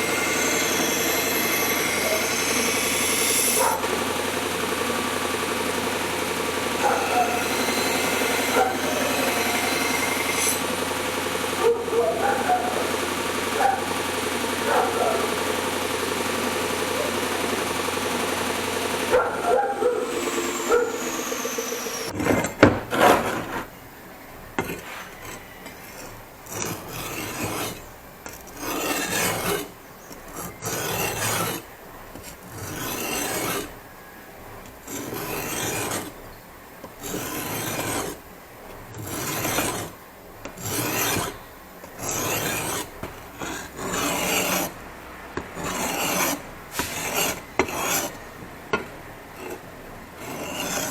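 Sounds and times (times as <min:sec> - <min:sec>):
hand file rasping: 0:00.0 - 0:03.9, 0:06.8 - 0:10.7, 0:19.1 - 0:23.7, 0:24.6 - 0:33.8, 0:34.8 - 0:36.2, 0:36.8 - 0:38.2, 0:39.0 - 0:40.0, 0:40.6 - 0:44.8, 0:45.6 - 0:49.6, 0:50.2 - 0:50.9
power tool motor winding down: 0:00.0 - 0:22.2.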